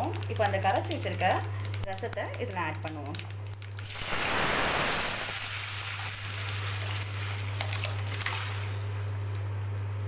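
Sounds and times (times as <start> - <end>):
liquid sizzling in hot oil: 3.8 - 9.4.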